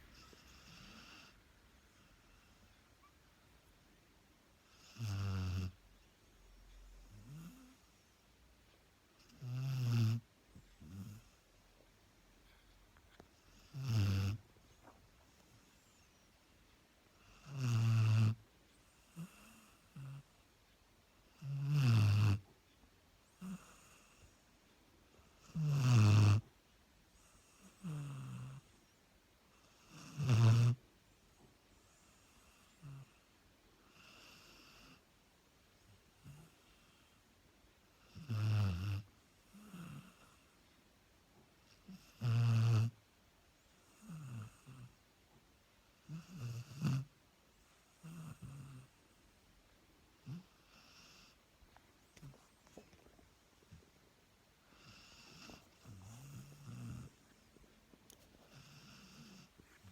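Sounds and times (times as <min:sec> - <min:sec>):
dog snoring: 0:00.1 - 0:01.4, 0:04.6 - 0:05.8, 0:06.8 - 0:08.1, 0:09.2 - 0:11.4, 0:13.4 - 0:15.0, 0:17.2 - 0:20.3, 0:21.3 - 0:22.5, 0:23.2 - 0:24.4, 0:25.2 - 0:26.5, 0:27.2 - 0:28.8, 0:29.5 - 0:30.8, 0:31.8 - 0:33.2, 0:33.8 - 0:35.0, 0:36.2 - 0:37.2, 0:38.0 - 0:40.5, 0:41.7 - 0:43.0, 0:43.8 - 0:45.0, 0:46.0 - 0:47.1, 0:47.8 - 0:49.0, 0:50.2 - 0:51.4, 0:54.7 - 0:57.3, 0:58.4 - 0:59.9.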